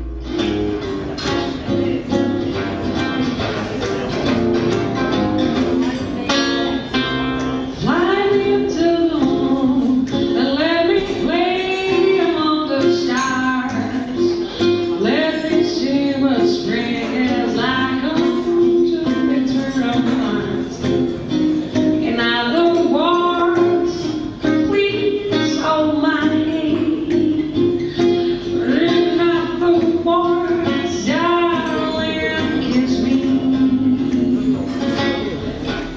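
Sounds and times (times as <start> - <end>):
plucked acoustic guitar: 0.0 - 35.9
woman singing: 7.7 - 34.8.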